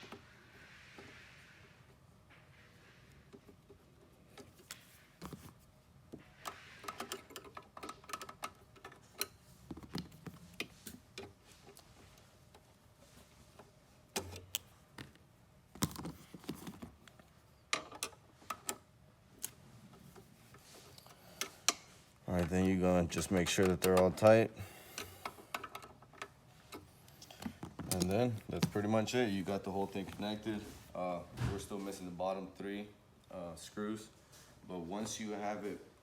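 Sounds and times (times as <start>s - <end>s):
hand tools clicking and rattling: 6.5s - 9.4s.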